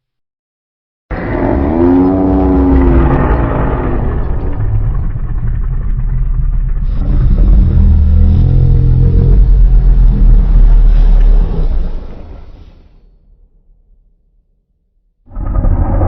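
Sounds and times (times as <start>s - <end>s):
deep dinosaur roar: 1.1s - 12.9s, 15.3s - 16.0s.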